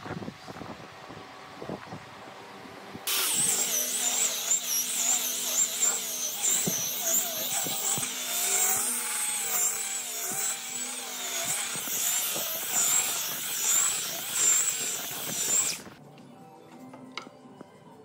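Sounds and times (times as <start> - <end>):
power tool cutting wood: 3.1 - 16.0.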